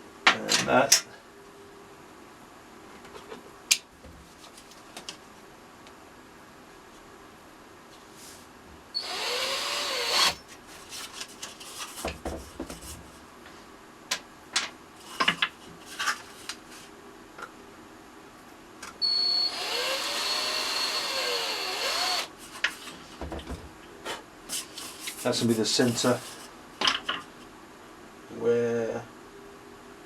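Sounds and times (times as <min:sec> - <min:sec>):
electric drill running: 0:09.0 - 0:10.4, 0:19.0 - 0:22.3.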